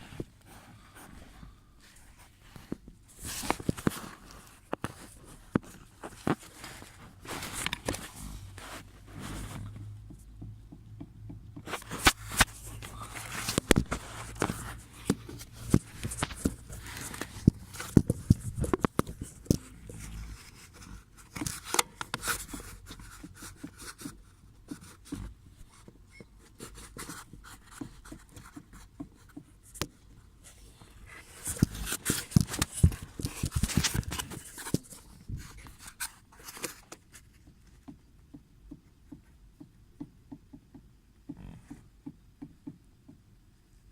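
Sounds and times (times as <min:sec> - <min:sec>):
steering shaft clicking and knocking: 0:09.7 - 0:11.8, 0:37.4 - 0:43.3.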